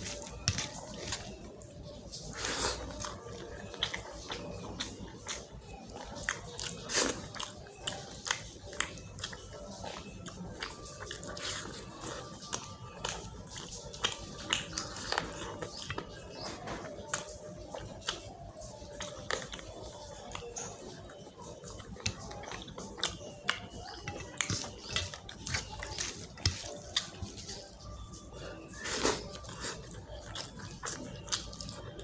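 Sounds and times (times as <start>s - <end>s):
person chewing food: 0.0s - 32.0s.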